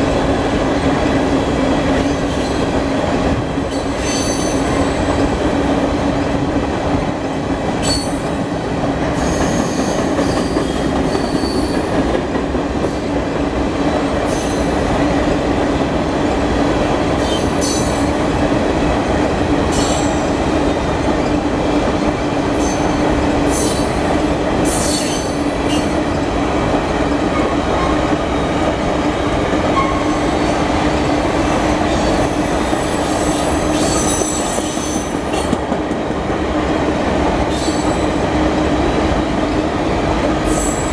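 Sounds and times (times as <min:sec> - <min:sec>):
train wheels rumbling on rails: 0:00.0 - 0:40.9
train flange squeals: 0:03.6 - 0:05.8, 0:07.8 - 0:12.1, 0:14.2 - 0:14.9, 0:17.2 - 0:18.3, 0:19.7 - 0:26.2, 0:29.5 - 0:35.8, 0:37.5 - 0:38.3, 0:40.4 - 0:40.9.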